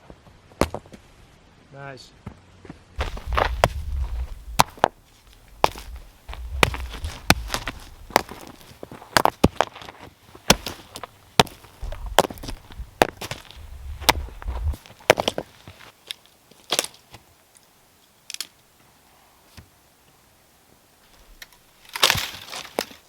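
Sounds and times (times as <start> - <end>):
rocks clacking together: 3.0 - 9.8, 10.5 - 15.5.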